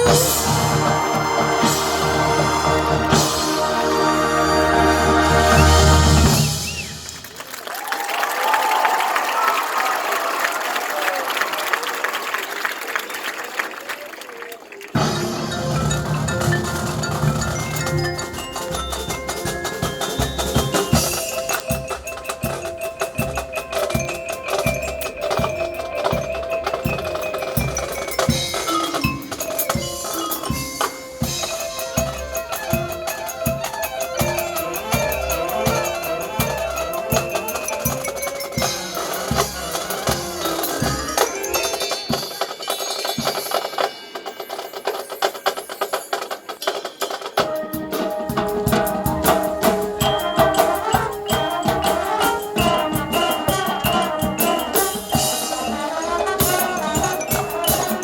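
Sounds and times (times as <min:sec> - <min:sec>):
sustained melodic notes: 0:00.0 - 0:06.4, 0:15.0 - 0:42.1, 0:47.4 - 0:58.0
marimba and glockenspiel: 0:00.0 - 0:06.8, 0:15.0 - 0:58.0
steady drum beat: 0:00.0 - 0:07.3, 0:15.0 - 0:42.4, 0:47.3 - 0:58.0.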